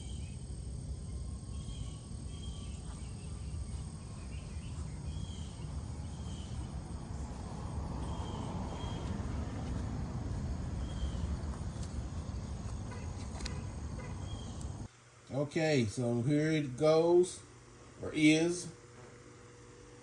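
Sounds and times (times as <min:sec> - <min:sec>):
low rumble: 0:00.0 - 0:14.9.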